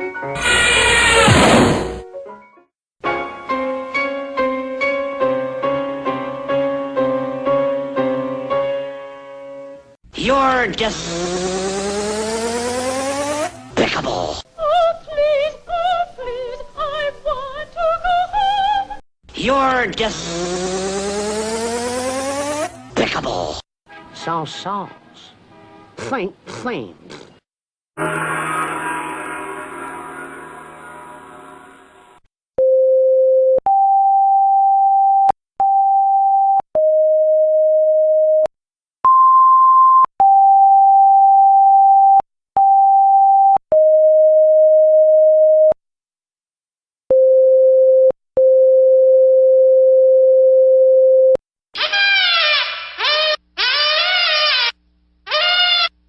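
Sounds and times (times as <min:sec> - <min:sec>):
wavering pitch-bending honk: 0:51.8 - 0:55.9.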